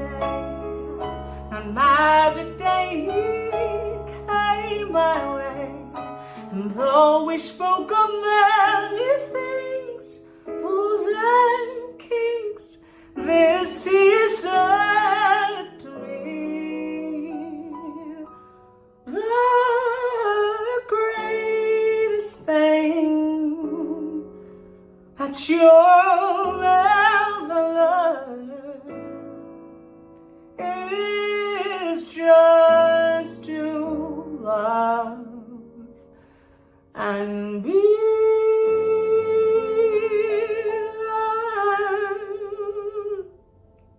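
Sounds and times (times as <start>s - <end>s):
woman singing jazz melody: 0.0s - 18.2s.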